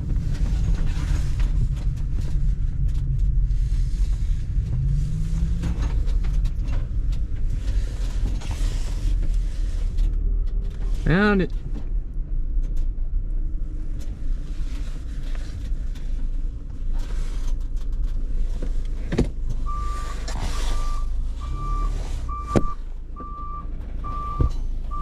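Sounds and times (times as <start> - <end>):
vehicle engine running: 0.0 - 25.0
backup alarm beeping: 19.6 - 25.0.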